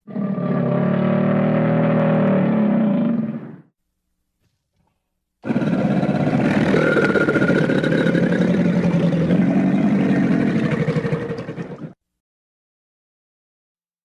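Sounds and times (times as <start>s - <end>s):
crocodile growling: 0.0s - 3.6s, 5.4s - 12.0s.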